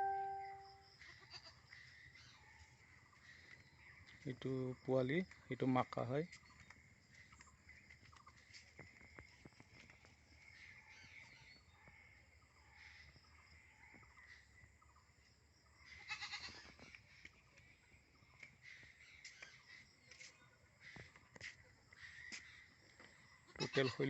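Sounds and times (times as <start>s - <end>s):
goat bleating: 1.1s - 1.5s, 16.0s - 16.6s, 23.5s - 24.0s.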